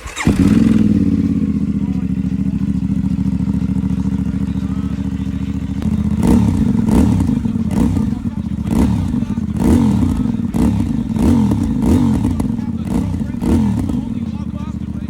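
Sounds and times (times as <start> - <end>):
short throttle revs: 0.0 - 2.0
motorcycle engine idling: 0.0 - 15.0.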